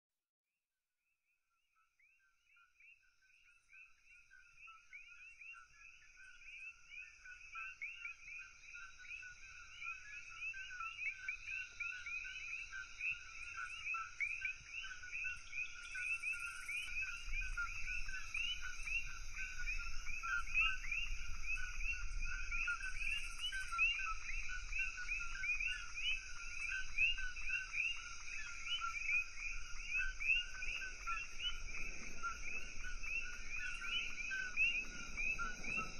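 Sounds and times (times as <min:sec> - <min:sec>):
chorus of frogs calling: 0:03.8 - 0:35.9.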